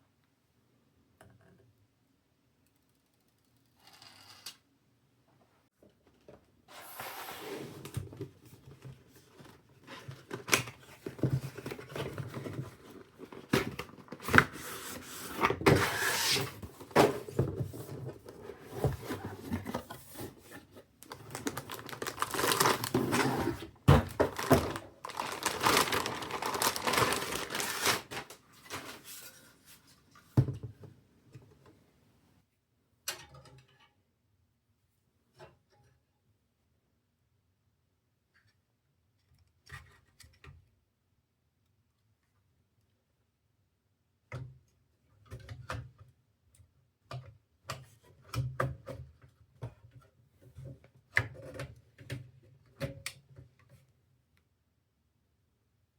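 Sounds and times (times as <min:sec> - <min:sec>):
rustling and crinkling: 0:07.7 - 0:30.4.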